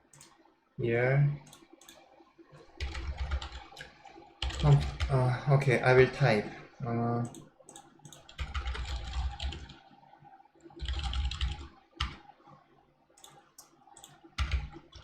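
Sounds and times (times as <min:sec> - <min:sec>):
keyboard typing: 0:00.1 - 0:00.4, 0:01.4 - 0:05.2, 0:07.2 - 0:09.8, 0:10.6 - 0:12.3, 0:13.2 - 0:15.0.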